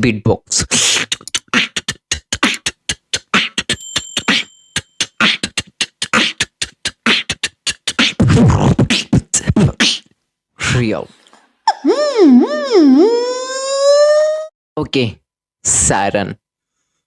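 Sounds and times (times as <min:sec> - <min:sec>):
beatboxing record scratches: 0:00.5 - 0:10.1.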